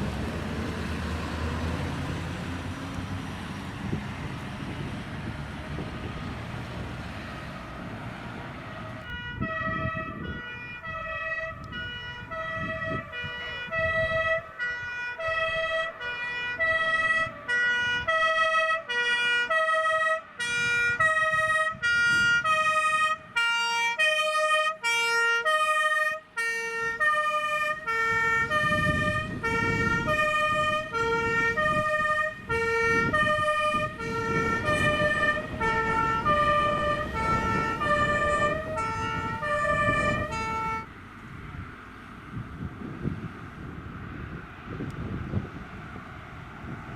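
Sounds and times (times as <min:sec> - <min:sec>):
truck engine and tyres rumble: 0:00.0 - 0:46.9
two-tone fire engine siren: 0:04.7 - 0:41.6.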